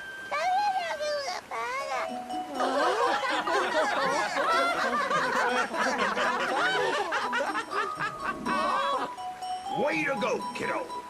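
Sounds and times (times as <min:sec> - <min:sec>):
high-pitched cartoon voices laughing: 0:02.0 - 0:09.2.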